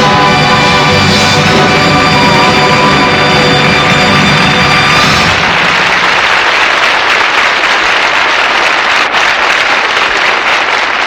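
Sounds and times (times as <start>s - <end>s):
band playing last chord: 0.0s - 6.4s
audience applauding: 0.0s - 11.0s.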